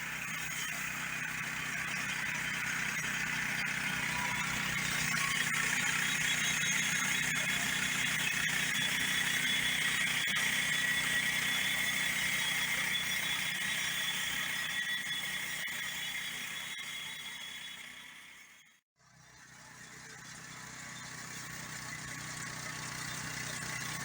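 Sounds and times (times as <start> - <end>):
band saw blade whine: 0.0 - 18.6
sawmill engine drone: 0.0 - 18.6, 19.2 - 24.0.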